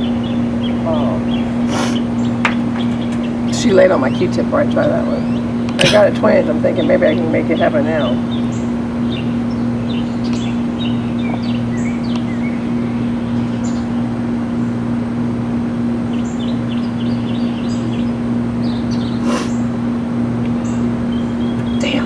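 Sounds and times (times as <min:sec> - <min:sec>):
small birds chirping: 0:00.0 - 0:14.8, 0:16.1 - 0:19.8, 0:20.4 - 0:22.0
steady low hum: 0:00.0 - 0:22.0
brief hiss: 0:01.7 - 0:02.0, 0:19.2 - 0:19.5.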